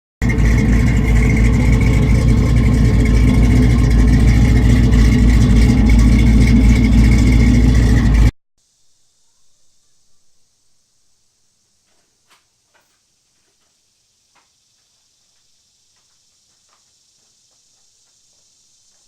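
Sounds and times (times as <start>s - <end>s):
vehicle engine running: 0.2s - 8.3s.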